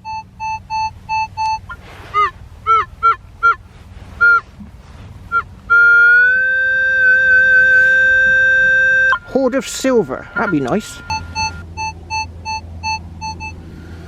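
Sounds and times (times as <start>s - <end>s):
metal detector beeps: 0.0s - 3.6s, 7.7s - 13.6s
metal detector long tone: 5.3s - 13.6s.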